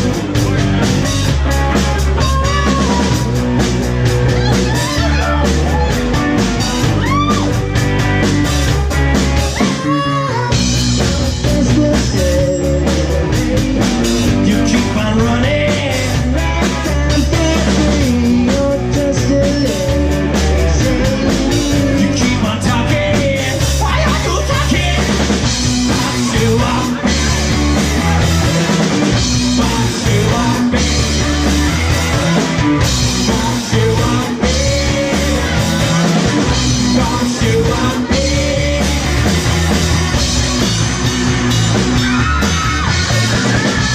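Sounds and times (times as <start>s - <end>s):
rock band playing live: 0.0s - 43.9s
person singing: 2.1s - 3.4s, 9.5s - 28.4s, 29.3s - 40.3s.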